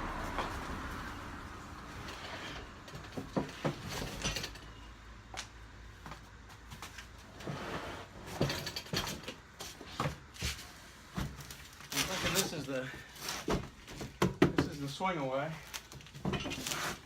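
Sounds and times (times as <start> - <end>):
cardboard rustling and scraping: 9.6 - 14.2, 15.7 - 17.0.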